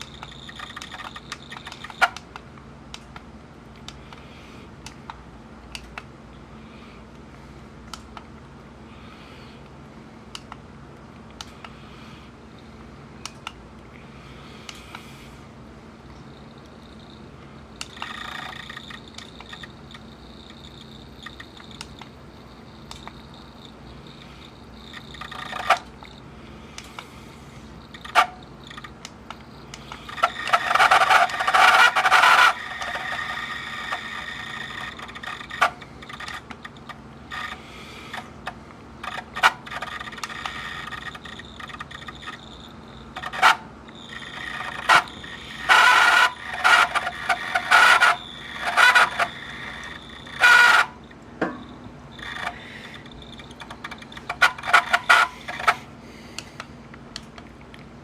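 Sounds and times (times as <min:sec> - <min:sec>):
steady low hum: 0:00.0 - 0:58.0
cassette deck scraping and squealing: 0:27.9 - 0:28.9, 0:30.0 - 0:38.3, 0:39.1 - 0:51.1, 0:52.1 - 0:55.8.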